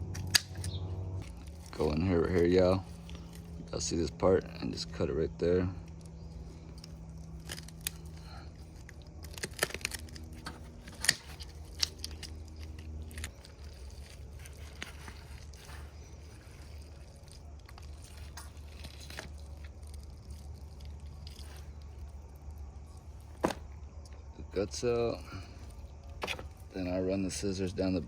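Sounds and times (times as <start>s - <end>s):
low hum: 0.0s - 28.0s
knife crunching through fish: 7.3s - 22.4s.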